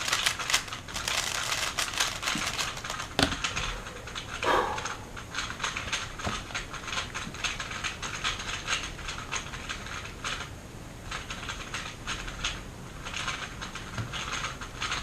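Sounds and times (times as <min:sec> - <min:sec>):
puzzle cube clicking: 0:00.0 - 0:03.6.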